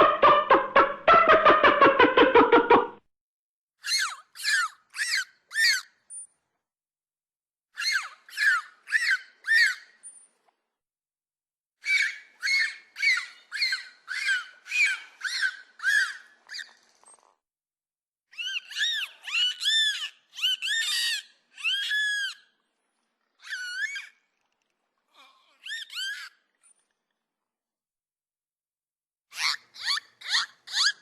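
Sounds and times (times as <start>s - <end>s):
dolphin whistles: 11.8s - 16.8s, 18.3s - 22.5s, 23.4s - 24.2s.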